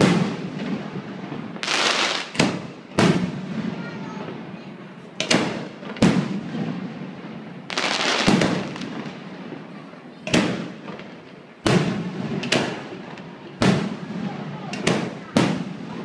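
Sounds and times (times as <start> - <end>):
fireworks bursting: 0.0 - 16.0
firework hissing: 1.5 - 2.9, 7.5 - 9.4.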